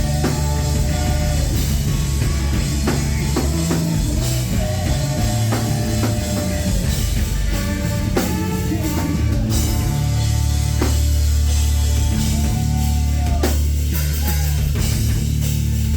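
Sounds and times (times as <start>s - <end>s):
drum kit: 0.0s - 15.9s.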